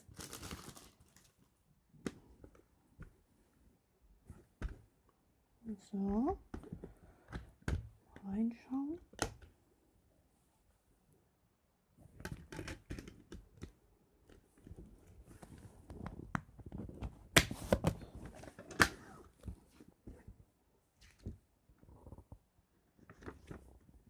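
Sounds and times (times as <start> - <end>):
plastic case clicks and rustles: 12.2 - 14.8, 15.5 - 19.6.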